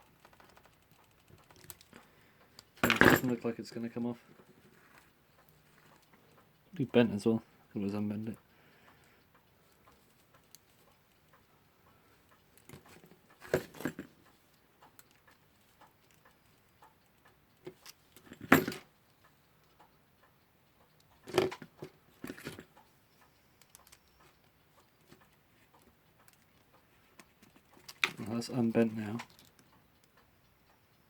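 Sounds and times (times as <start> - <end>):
metal clicks of hand tools: 12.3 - 19.8, 24.9 - 30.1.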